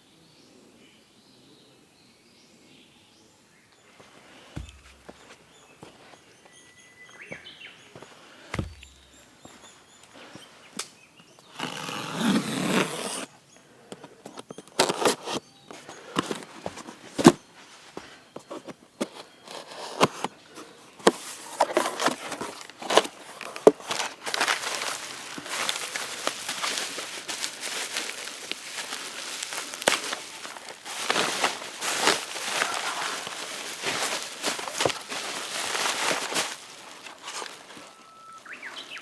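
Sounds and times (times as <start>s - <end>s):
faint bird chirps: 0.0s - 11.6s, 37.7s - 39.0s
rustling: 3.8s - 10.6s, 21.0s - 38.6s
clicks and knocks of handling: 4.6s - 5.4s, 8.5s - 9.7s.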